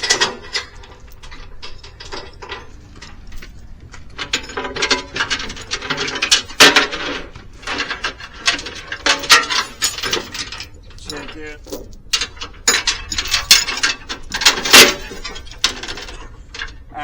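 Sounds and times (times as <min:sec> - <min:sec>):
metal chain clinking: 0:00.0 - 0:16.8
loud metal clank: 0:04.2 - 0:16.1.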